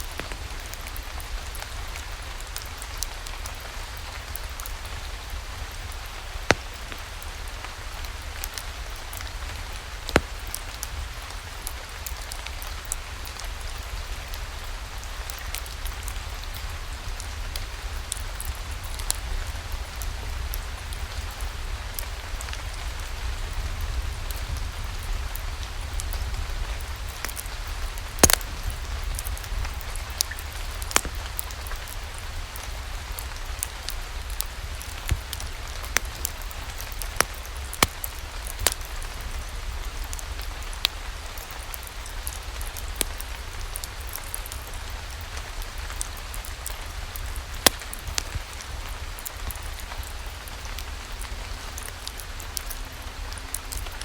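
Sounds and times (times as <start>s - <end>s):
steady rain hiss: 0.0s - 54.0s
sharp pops: 10.1s - 10.4s, 28.2s - 28.7s, 30.8s - 31.2s.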